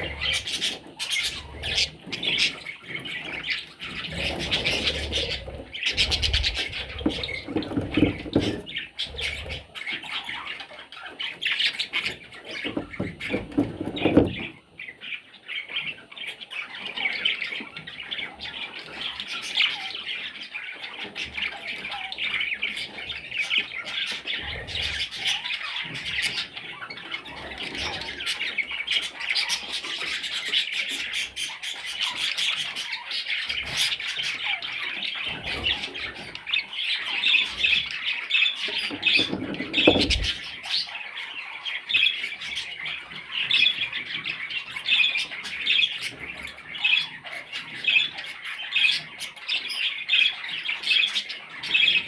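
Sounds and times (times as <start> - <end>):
budgerigars chirping and squawking: 0.0 - 52.0
rustling movement: 38.7 - 40.5.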